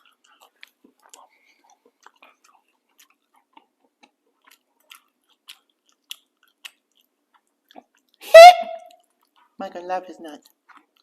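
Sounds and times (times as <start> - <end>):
person chewing with mouth clicks: 0.0 - 8.2, 8.8 - 11.0.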